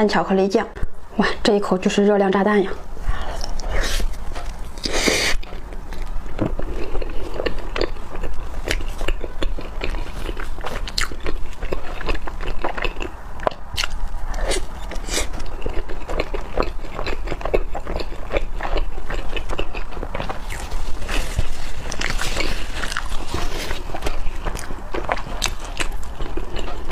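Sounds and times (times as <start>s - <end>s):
person chewing soft bread: 3.1s - 26.9s.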